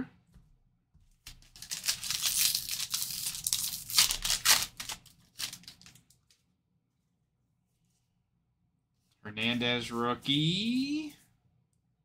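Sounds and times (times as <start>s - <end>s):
plastic wrapper tearing and crinkling: 1.3s - 6.4s.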